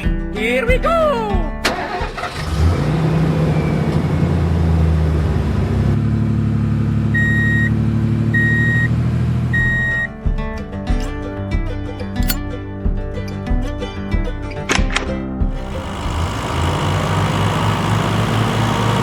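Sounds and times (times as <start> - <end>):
truck engine running: 1.6 - 10.1, 14.7 - 19.0
reversing alarm beeping: 7.2 - 7.7, 8.4 - 8.9, 9.5 - 10.1.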